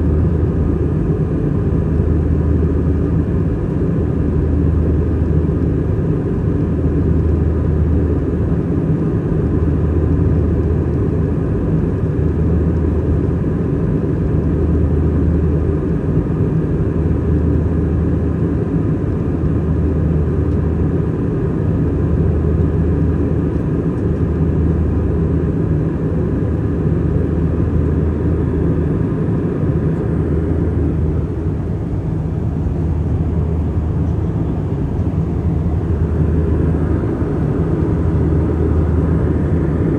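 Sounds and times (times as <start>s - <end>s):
jet engine drone and airflow: 0.0s - 39.9s
deep low hum: 29.7s - 39.9s.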